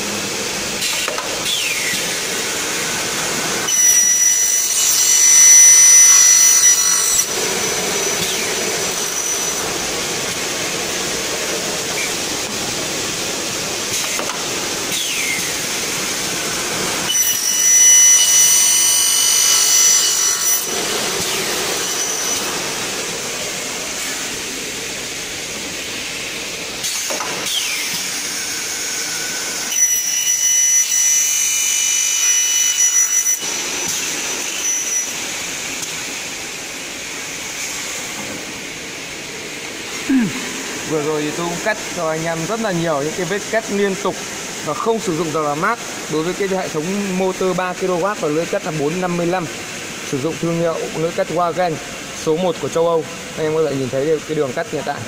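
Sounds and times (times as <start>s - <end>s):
saw blade cutting metal: 0.8s - 12.6s, 13.9s - 24.4s, 26.8s - 36.2s.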